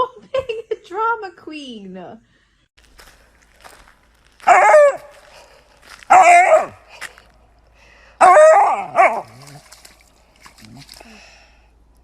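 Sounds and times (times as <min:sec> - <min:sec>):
dog whining and howling: 0:04.5 - 0:05.1, 0:06.1 - 0:06.8, 0:08.2 - 0:09.5.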